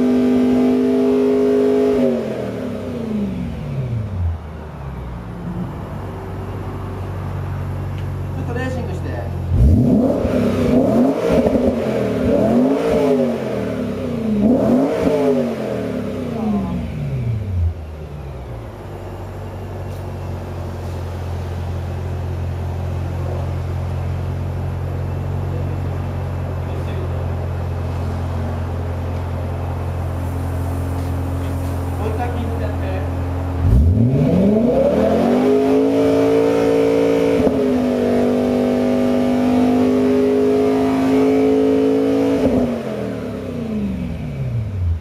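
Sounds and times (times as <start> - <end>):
car engine revving and idling: 0.0 - 45.0.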